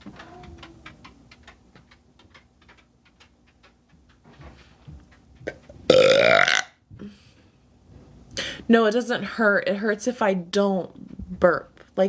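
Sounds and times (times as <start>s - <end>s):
faint clicks: 0.0s - 4.3s
woman belching: 5.9s - 6.7s.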